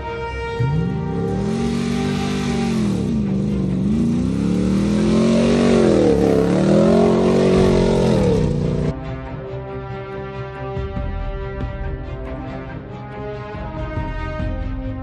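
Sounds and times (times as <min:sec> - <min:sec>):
rally car engine revving: 0:00.6 - 0:08.9.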